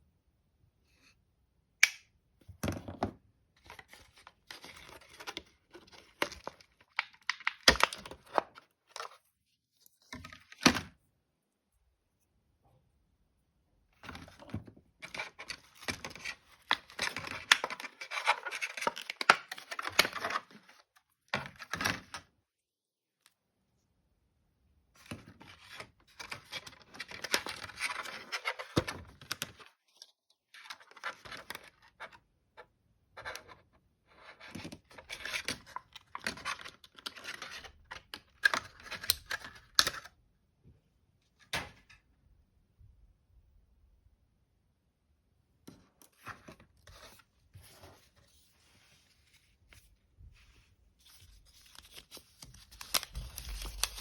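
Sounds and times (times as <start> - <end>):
packaging crinkling and tearing: 51.0 - 54.0.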